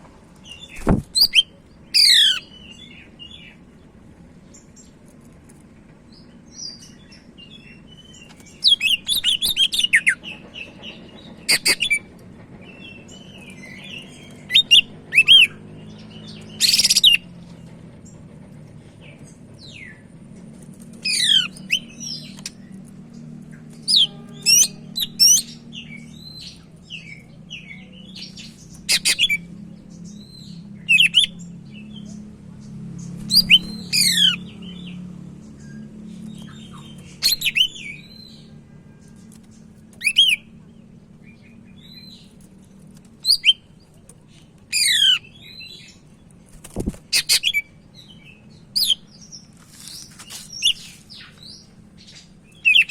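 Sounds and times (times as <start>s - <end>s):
bird singing whistles and chatter: 0.5s - 2.9s, 7.8s - 12.1s, 12.7s - 17.3s, 23.8s - 32.1s, 33.2s - 34.7s, 35.6s - 38.5s, 40.0s - 40.6s, 43.2s - 43.7s, 47.1s - 49.1s, 52.6s - 52.9s.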